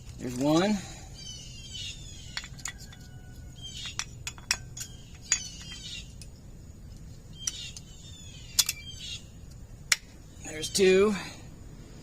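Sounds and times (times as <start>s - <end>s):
birds chirping: 0.2s - 11.5s
metallic clinks of brake pads: 2.2s - 7.9s, 8.5s - 8.9s.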